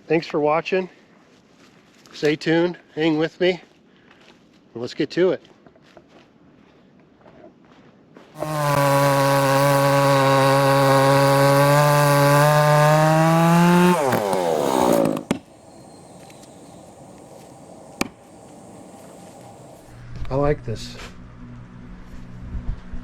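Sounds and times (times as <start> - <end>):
chainsaw engine revving: 8.4 - 20.0.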